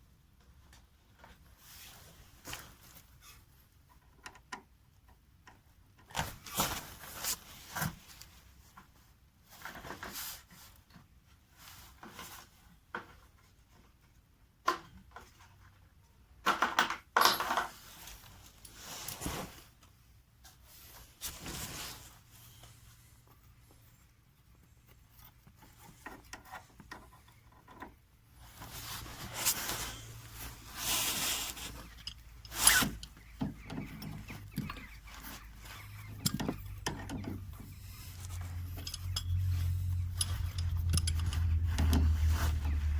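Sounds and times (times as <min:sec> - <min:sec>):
tools scraping and rubbing: 0:21.2 - 0:42.9
metal tools clinking: 0:28.9 - 0:33.2, 0:33.9 - 0:42.3.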